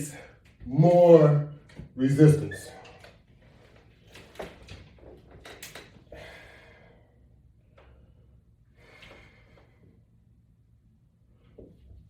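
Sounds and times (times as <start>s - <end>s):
man breathing hard: 6.1s - 10.0s.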